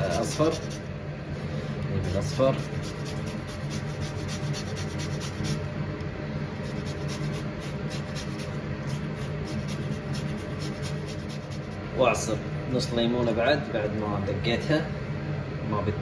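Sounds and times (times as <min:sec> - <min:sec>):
lemon scraping on a grater: 0:00.0 - 0:00.8, 0:02.1 - 0:05.6, 0:06.6 - 0:11.8.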